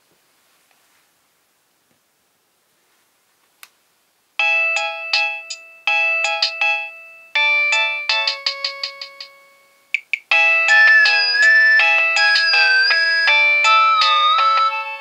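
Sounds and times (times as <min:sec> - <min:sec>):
phone ringtone melody: 0:04.4 - 0:15.0.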